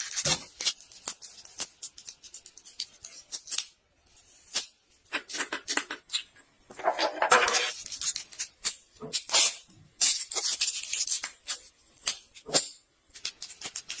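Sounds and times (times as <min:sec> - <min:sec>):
packaging crinkling and rustling: 0:00.0 - 0:03.6.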